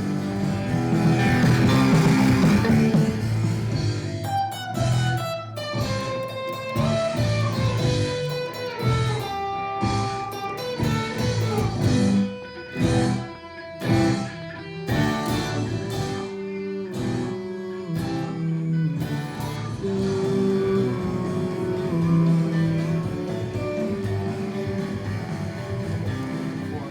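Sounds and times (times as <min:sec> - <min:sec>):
drum hits: 0:00.0 - 0:04.3, 0:20.0 - 0:26.9
bass guitar: 0:00.0 - 0:26.9
rock guitar melody: 0:00.0 - 0:26.9.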